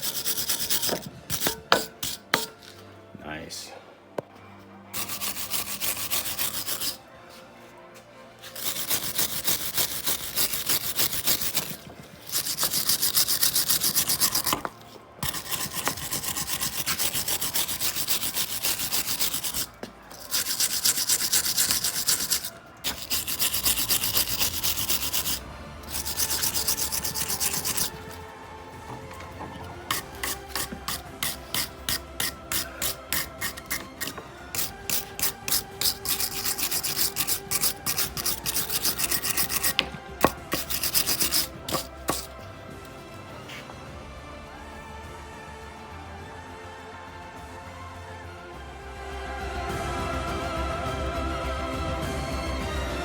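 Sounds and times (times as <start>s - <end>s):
scrubbing metal brake bracket: 5.0s - 7.0s, 8.5s - 28.2s, 28.9s - 42.3s.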